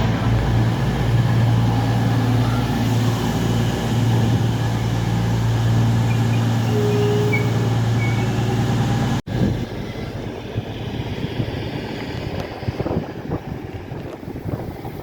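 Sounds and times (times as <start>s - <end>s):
train diesel engine humming: 0.0s - 15.0s
wind on microphone: 10.5s - 15.0s.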